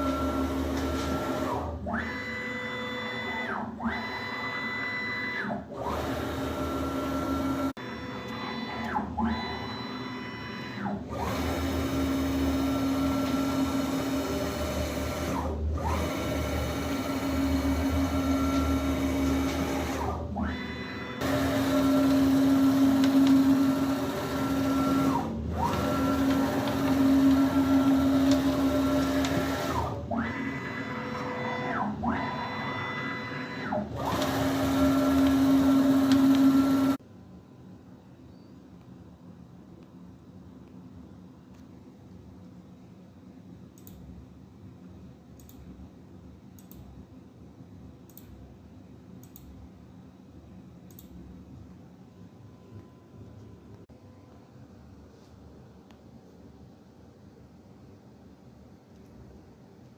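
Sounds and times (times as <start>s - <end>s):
stepper motor whine: 0.0s - 37.0s.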